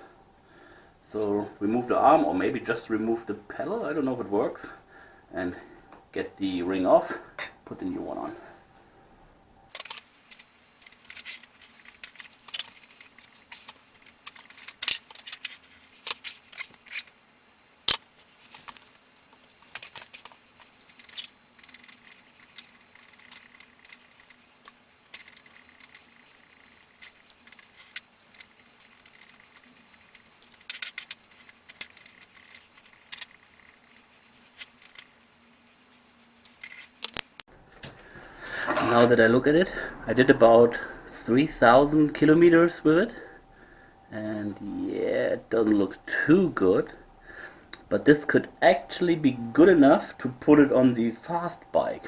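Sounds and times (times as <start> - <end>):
faint steady hum: 0.0 - 52.0
metal tools clinking and rattling: 9.7 - 17.1.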